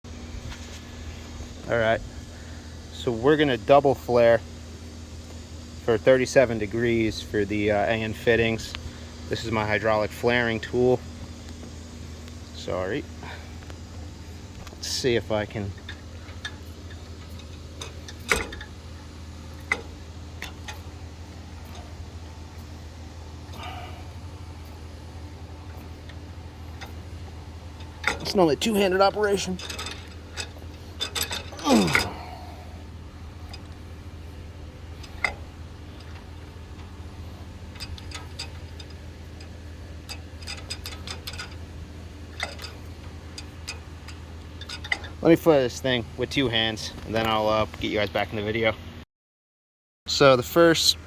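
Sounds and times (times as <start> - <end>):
steady low hum: 0.0 - 49.0
metal clicks and knocks: 15.8 - 21.0, 25.6 - 32.2, 34.9 - 45.2.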